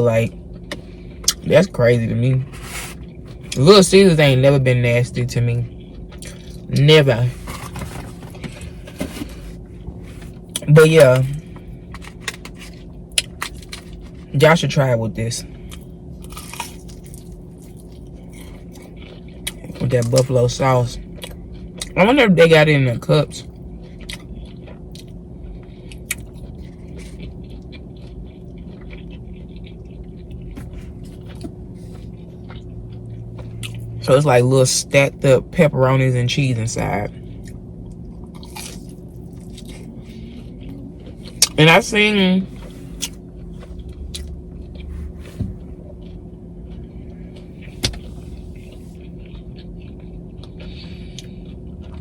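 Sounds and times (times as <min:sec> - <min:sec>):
faint steady hum: 0:00.0 - 0:52.0
person chewing food: 0:05.6 - 0:14.4, 0:15.4 - 0:22.0, 0:23.4 - 0:34.0, 0:37.0 - 0:41.6, 0:42.5 - 0:52.0.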